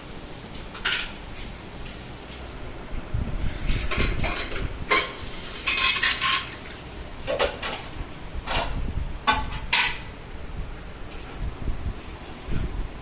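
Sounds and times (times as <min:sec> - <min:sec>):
dishes and utensils clattering: 0:03.5 - 0:07.9, 0:09.3 - 0:10.1.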